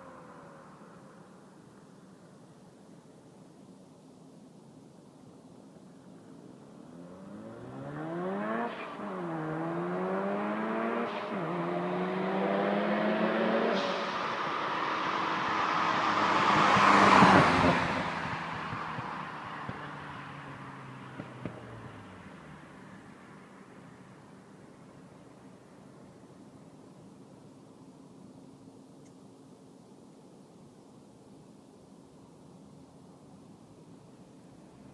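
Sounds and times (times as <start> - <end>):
car passing by: 6.8 - 25.0
rotary engine accelerating: 6.9 - 22.4.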